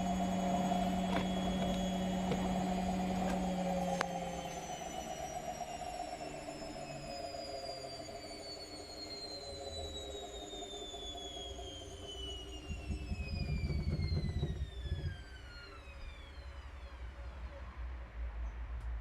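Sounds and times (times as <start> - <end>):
washing machine motor whine: 0.0 - 17.4
heavy low rumble from drum: 12.7 - 15.1.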